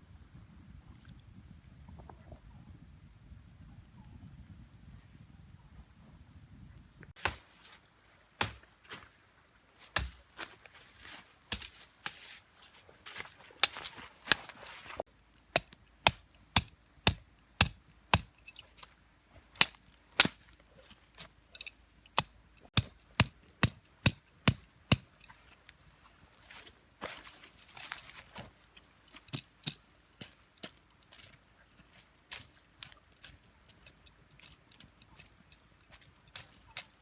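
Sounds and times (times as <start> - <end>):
sharp chopping knocks: 8.4 - 8.6.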